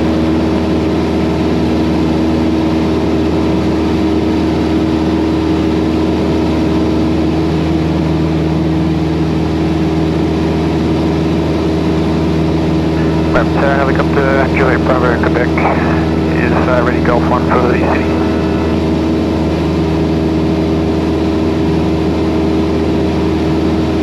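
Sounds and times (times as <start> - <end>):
aircraft engine droning: 0.0 - 24.0
low hum: 12.7 - 22.1.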